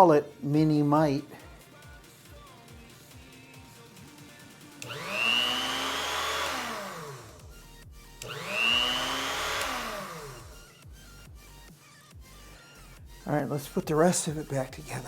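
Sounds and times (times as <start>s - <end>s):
key cutting machine motor: 4.8s - 7.5s, 8.2s - 10.7s.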